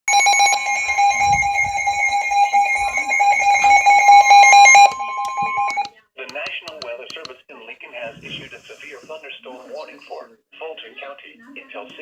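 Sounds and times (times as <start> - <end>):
two-tone alarm: 0.1 - 5.9.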